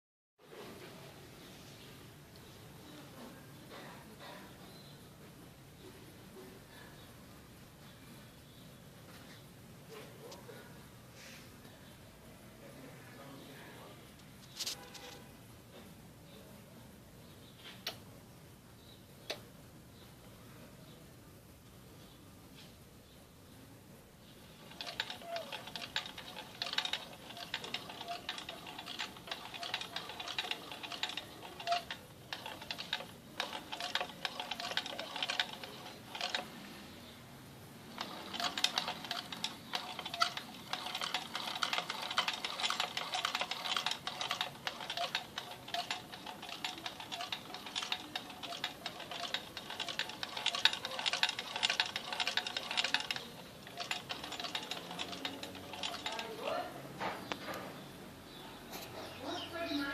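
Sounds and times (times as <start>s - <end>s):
sewing machine stitching: 24.6s - 36.6s, 37.9s - 56.5s.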